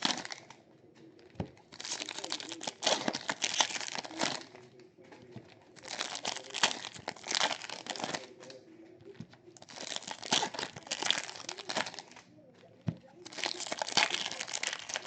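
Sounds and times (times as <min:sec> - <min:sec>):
foil wrappers tearing and crinkling: 0:00.0 - 0:00.5, 0:01.6 - 0:08.6, 0:09.6 - 0:12.3, 0:13.2 - 0:15.0.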